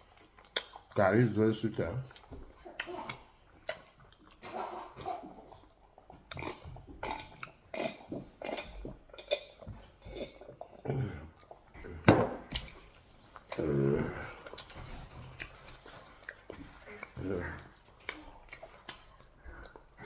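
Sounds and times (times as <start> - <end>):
mouth smacking and chewing: 0.0 - 20.0
dishes clinking: 12.1 - 12.6.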